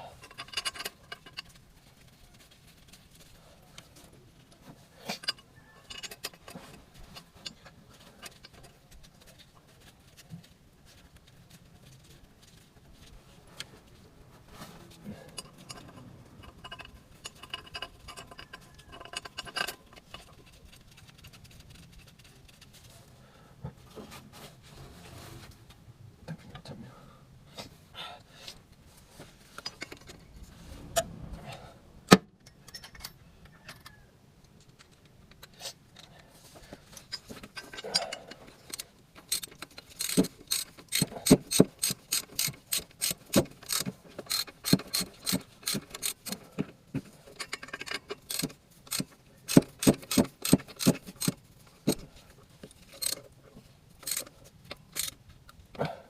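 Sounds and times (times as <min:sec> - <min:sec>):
ratchet wrench clicking: 0:38.7 - 0:46.4, 0:47.7 - 0:52.0, 0:53.0 - 0:53.2, 0:54.0 - 0:54.3, 0:54.9 - 0:55.2.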